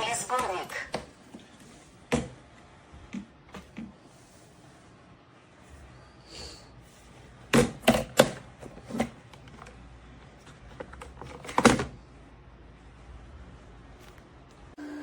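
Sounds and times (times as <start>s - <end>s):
plastic parts clicking and knocking: 7.5s - 9.8s.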